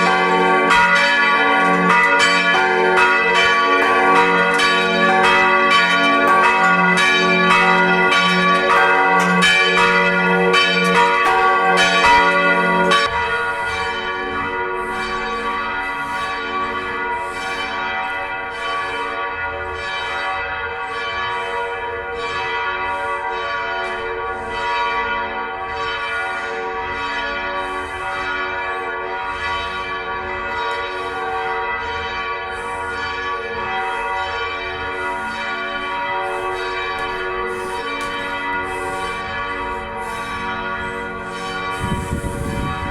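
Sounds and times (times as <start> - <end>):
church bells ringing: 0.0 - 42.9.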